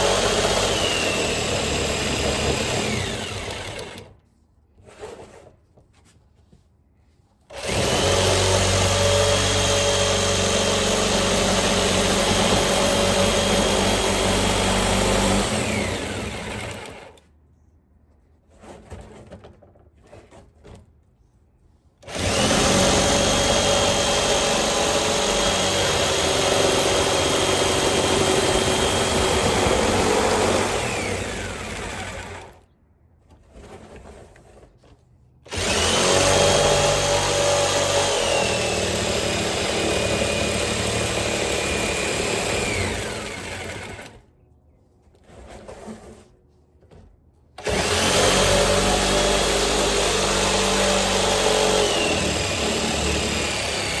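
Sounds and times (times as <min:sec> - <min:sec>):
jigsaw cutting metal barrel: 0:00.0 - 0:04.2, 0:07.5 - 0:17.2, 0:22.0 - 0:32.6, 0:35.5 - 0:44.3, 0:47.6 - 0:54.0.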